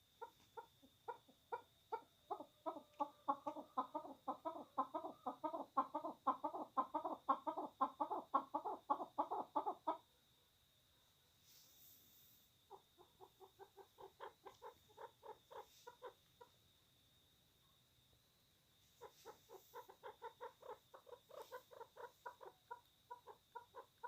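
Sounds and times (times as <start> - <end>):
partridge clucking calls: 0.2 - 10.0, 12.7 - 16.5, 19.0 - 24.0.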